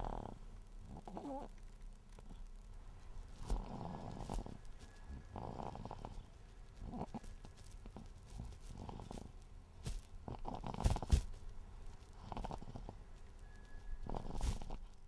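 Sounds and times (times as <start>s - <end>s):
person snoring softly: 0.0s - 1.5s, 3.4s - 7.2s, 12.2s - 13.0s.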